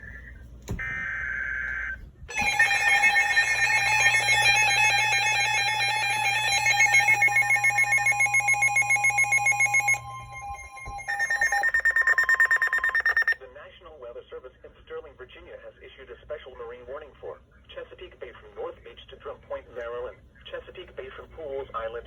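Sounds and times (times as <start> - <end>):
harsh multi-tone attention signal: 0.8 - 13.4
data burst: 2.3 - 13.4
second steady tone: 2.3 - 13.4.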